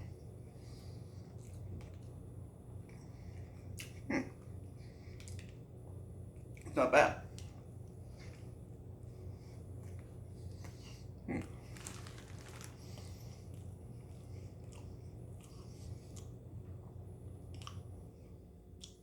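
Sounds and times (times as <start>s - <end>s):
steady low hum: 0.0s - 19.0s
small crunchy clicks: 11.7s - 13.1s.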